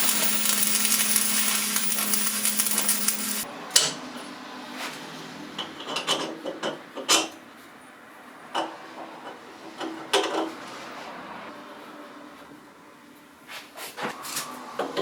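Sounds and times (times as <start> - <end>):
hard objects knocking and clicking: 0.0 - 3.5.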